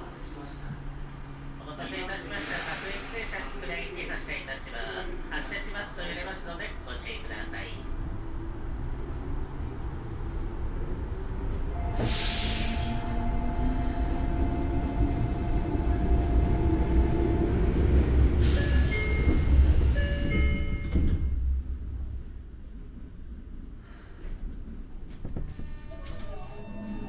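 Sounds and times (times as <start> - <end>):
train running rumble: 0.0 - 27.0
air hiss: 2.4 - 3.7, 12.0 - 13.0.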